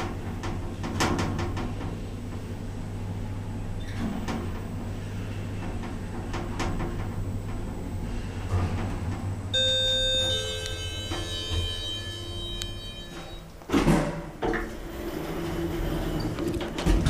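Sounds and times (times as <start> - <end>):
lift humming: 0.0 - 13.8, 14.4 - 17.0
electronic musical tones: 9.6 - 13.5.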